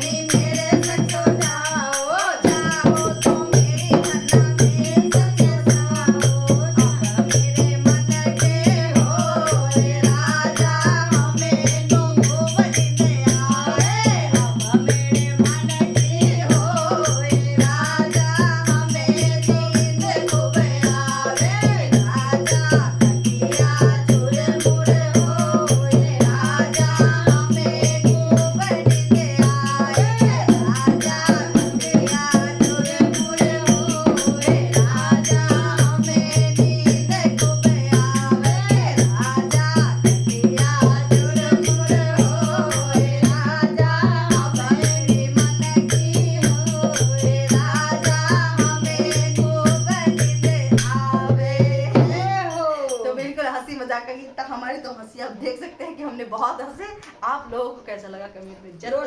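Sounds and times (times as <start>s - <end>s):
backing music with rattling beat: 0.0s - 52.5s
woman singing: 0.0s - 57.7s.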